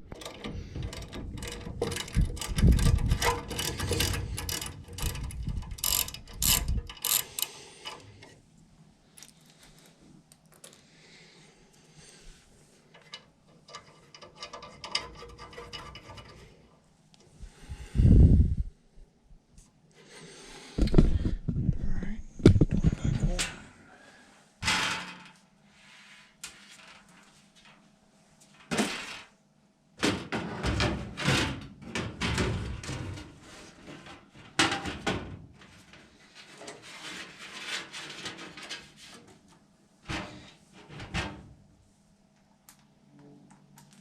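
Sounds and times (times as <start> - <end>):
handling of parts: 0.0 - 8.4, 12.8 - 16.7.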